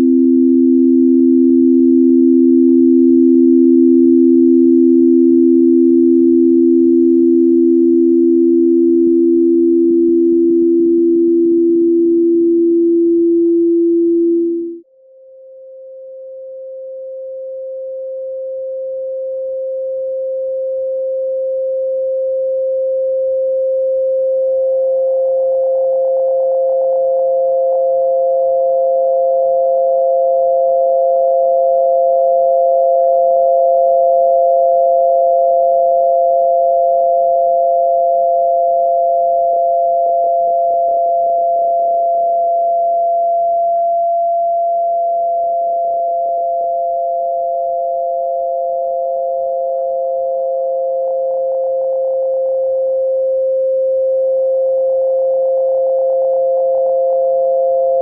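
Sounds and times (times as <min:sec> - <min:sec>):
higher steady tone: 0:00.0 - 0:15.4, 0:38.7 - 0:58.0
steady pure tone: 0:00.0 - 0:58.0.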